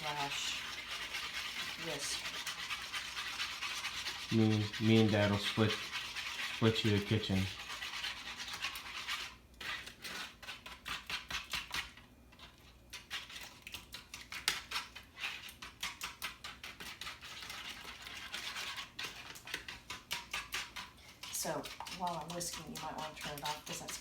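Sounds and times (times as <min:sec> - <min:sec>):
whisk clicking against tray: 0:18.3 - 0:24.0.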